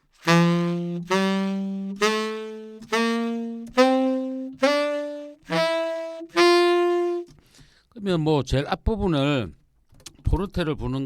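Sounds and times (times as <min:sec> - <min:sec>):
tenor saxophone playing scale: 0:00.0 - 0:07.4.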